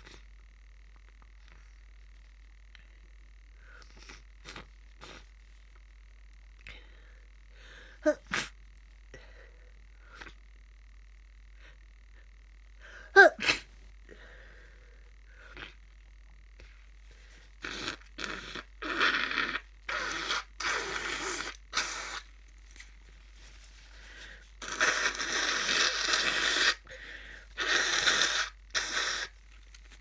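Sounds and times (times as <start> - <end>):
person breathing wheezily: 6.6 - 8.2, 14.0 - 15.8, 23.8 - 29.4.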